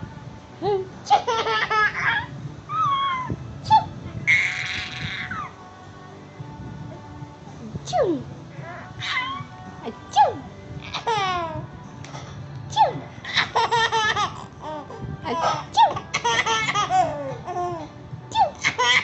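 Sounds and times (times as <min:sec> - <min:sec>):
baby laughing: 0:01.0 - 0:05.5, 0:10.2 - 0:11.6, 0:12.8 - 0:19.0.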